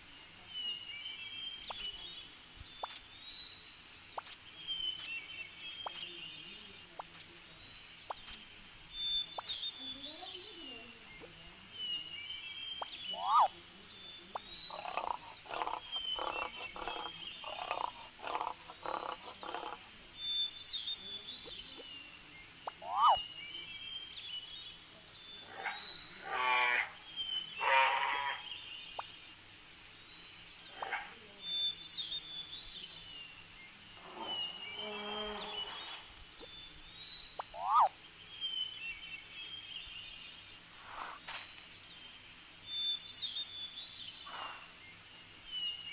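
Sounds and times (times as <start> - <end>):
birds chirping: 0.0 - 45.9
loud rattling calls: 12.8 - 13.6, 14.4 - 19.9, 22.7 - 23.2, 25.4 - 28.5, 37.3 - 38.0
pulsed animal calls: 13.1 - 13.5, 14.7 - 19.9, 22.7 - 23.2, 37.4 - 37.9.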